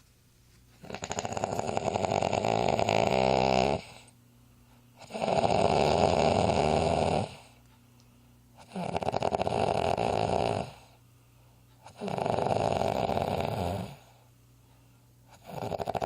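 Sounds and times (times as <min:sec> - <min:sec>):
long fluttering snores: 0:00.8 - 0:04.1, 0:05.0 - 0:07.6, 0:08.6 - 0:11.0, 0:11.9 - 0:14.2, 0:15.3 - 0:16.0.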